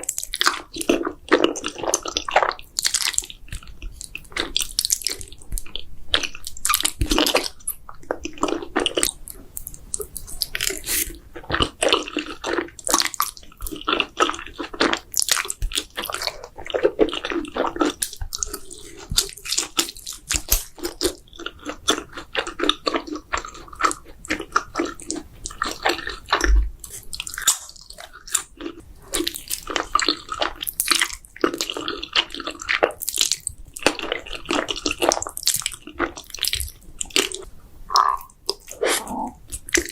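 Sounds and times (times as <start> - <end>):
biting and chewing food: 0.0 - 39.9
wet mouth clicks: 36.6 - 39.9.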